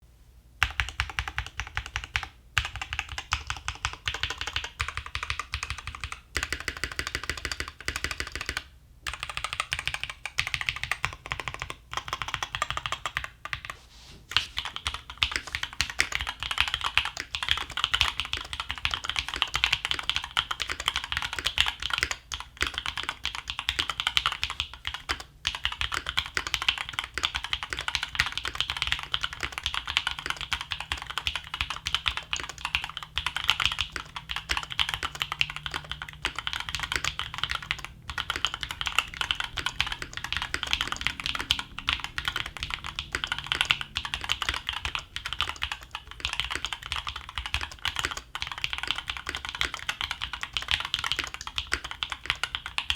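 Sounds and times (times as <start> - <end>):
fast mechanical keyboard typing: 0.6 - 52.9.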